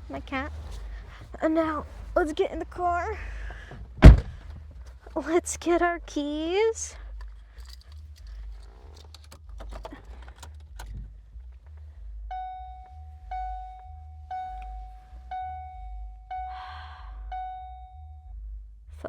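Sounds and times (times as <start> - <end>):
keys jangling: 7.5 - 11.0
car electronic warning chime: 12.3 - 18.4.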